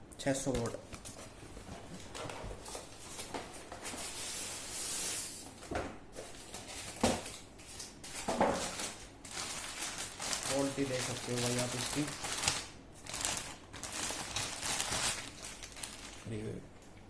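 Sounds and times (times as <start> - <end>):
rustling: 7.6 - 16.3.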